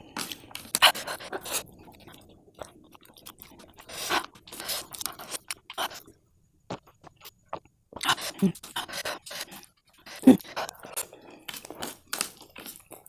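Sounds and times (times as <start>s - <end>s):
person chewing noodles: 0.0s - 13.0s.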